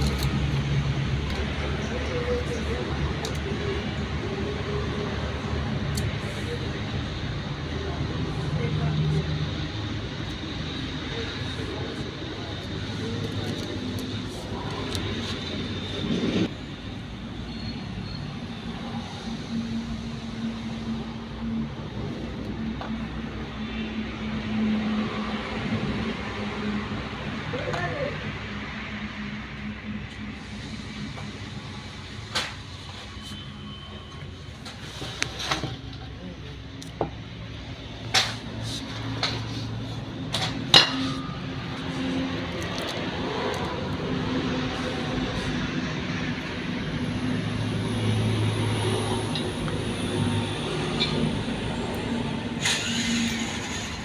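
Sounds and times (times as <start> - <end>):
vehicle engine humming: 0.0 - 54.0.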